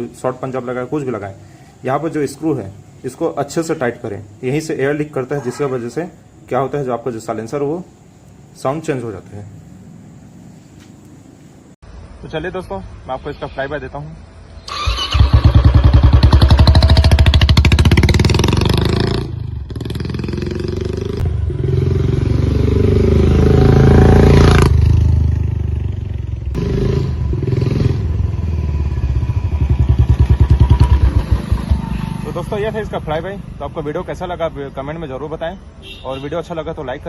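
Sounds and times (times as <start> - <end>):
motorcycle riding past: 14.7 - 33.5.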